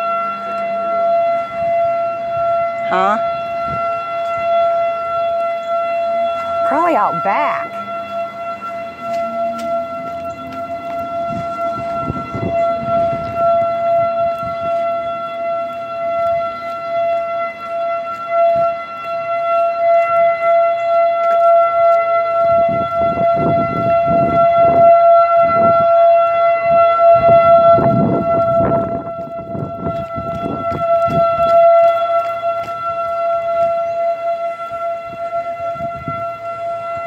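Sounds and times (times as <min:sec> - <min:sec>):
warning siren steady tone: 0:00.0 - 0:37.0
low rumbling: 0:06.0 - 0:17.4.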